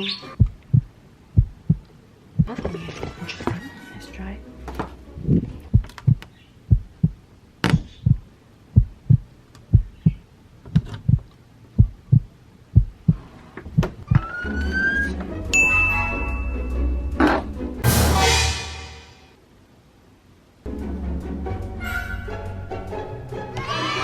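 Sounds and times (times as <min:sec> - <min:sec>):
heartbeat double thump: 0:00.4 - 0:02.6, 0:05.3 - 0:10.2, 0:11.0 - 0:13.2
suspense music with high tone: 0:15.8 - 0:19.3
loud crash: 0:17.8 - 0:19.4.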